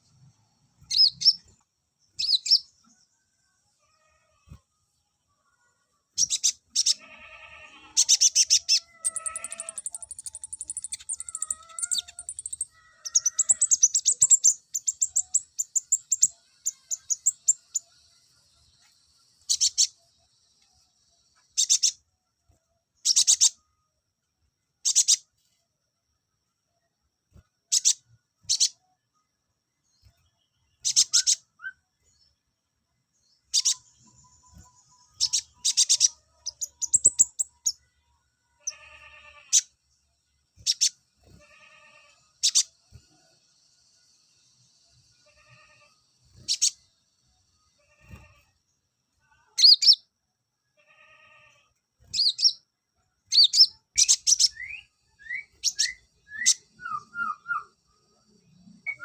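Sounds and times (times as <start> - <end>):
songbird trilling and chirping: 0.8 - 3.1, 6.2 - 7.3, 8.0 - 18.0, 19.4 - 20.0, 21.4 - 22.0, 23.0 - 23.6, 27.7 - 28.8, 30.0 - 32.3, 33.2 - 37.8, 40.6 - 41.0, 42.4 - 42.8, 46.4 - 46.8, 49.6 - 50.1, 52.0 - 52.6, 53.2 - 59.0
bird whistled notes: 53.4 - 57.8.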